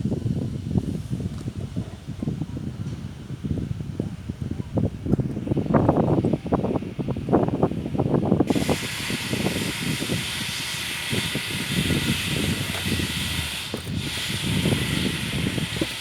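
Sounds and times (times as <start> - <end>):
wind rumble on microphone: 0.0 - 16.0
steady hiss: 5.5 - 16.0.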